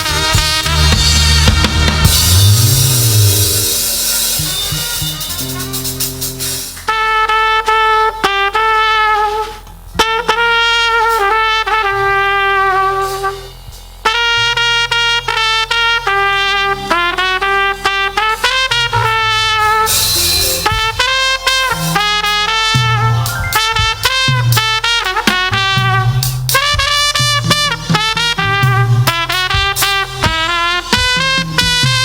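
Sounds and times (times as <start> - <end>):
cymbal crash: 0.0 - 7.2, 18.3 - 25.6
live band with bass: 0.0 - 32.0
trumpet melody: 0.0 - 32.0.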